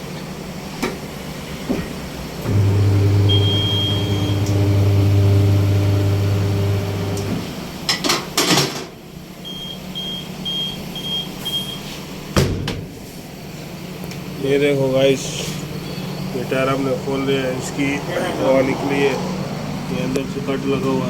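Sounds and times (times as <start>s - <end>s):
machine motor humming: 2.4s - 7.6s.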